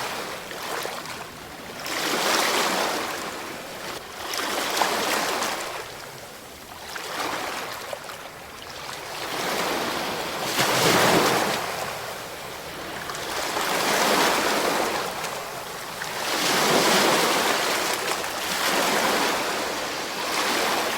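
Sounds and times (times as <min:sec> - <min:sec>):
ocean waves breaking: 0:08.9 - 0:20.9.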